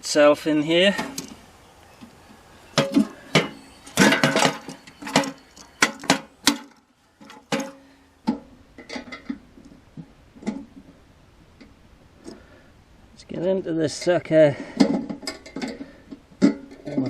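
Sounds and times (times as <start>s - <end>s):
metallic clanks and knocks: 2.8s - 11.0s, 14.7s - 17.0s.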